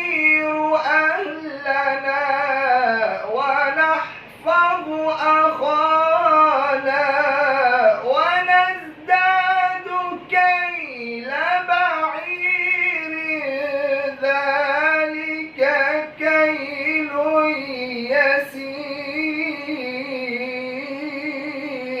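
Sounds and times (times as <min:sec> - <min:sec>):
person chanting melodic recitation: 0:00.0 - 0:22.0.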